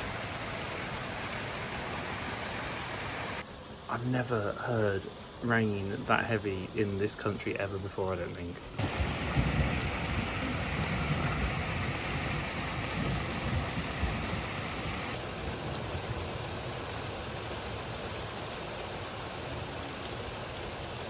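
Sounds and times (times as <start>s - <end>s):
heavy rain pouring: 0.0s - 21.0s
low thunder rumble: 8.8s - 16.7s.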